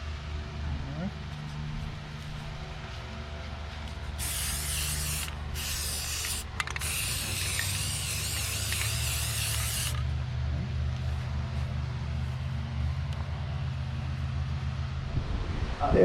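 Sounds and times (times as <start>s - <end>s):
steady low hum: 0.0s - 16.0s
paint spray hissing: 4.1s - 10.0s.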